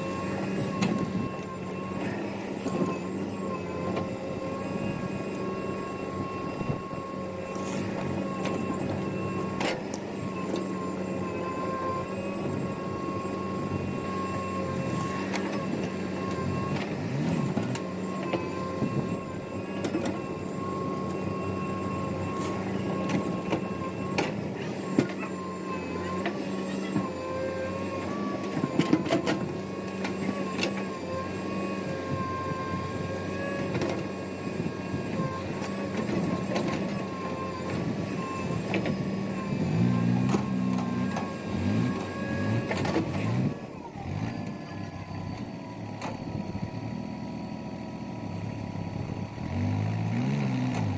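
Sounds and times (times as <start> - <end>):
heavy machinery engine whining: 0.0 - 50.9.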